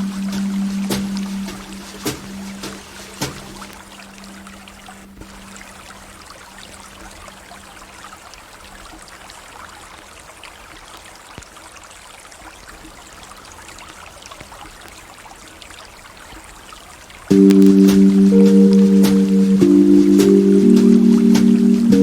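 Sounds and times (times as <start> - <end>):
faint low musical tone: 0.0 - 5.9, 17.3 - 22.0.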